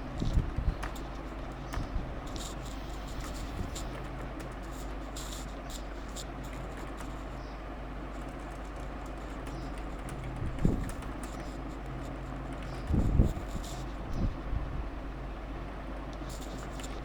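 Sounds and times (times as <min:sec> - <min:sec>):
low electrical hum: 0:00.0 - 0:17.0
keyboard typing: 0:00.3 - 0:07.4, 0:08.1 - 0:13.9, 0:16.3 - 0:17.0.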